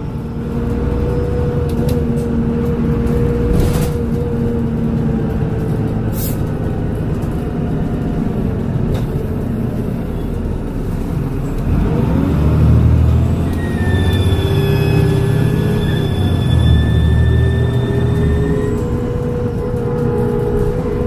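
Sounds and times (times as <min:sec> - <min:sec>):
bus diesel engine running: 0:00.0 - 0:21.0
turbocharger whistle: 0:13.5 - 0:19.0.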